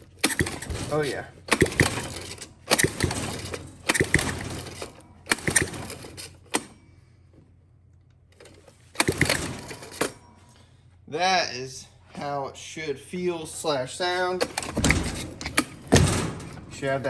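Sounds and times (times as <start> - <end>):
recoil pull starter turning engine over: 0.0 - 6.8, 8.4 - 10.2.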